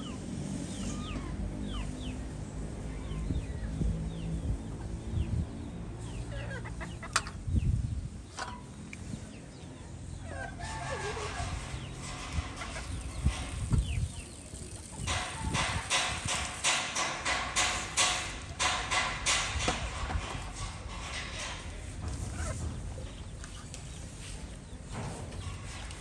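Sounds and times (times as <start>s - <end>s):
chickens clucking: 6.1s - 7.7s, 9.4s - 16.8s.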